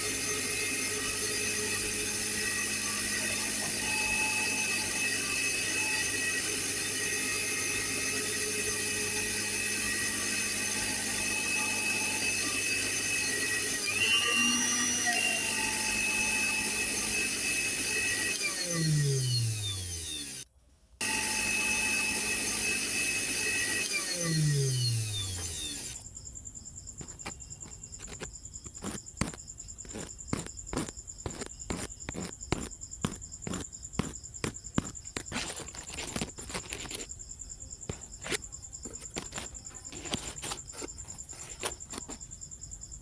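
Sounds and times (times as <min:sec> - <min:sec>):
electric blender running: 0:00.0 - 0:26.0.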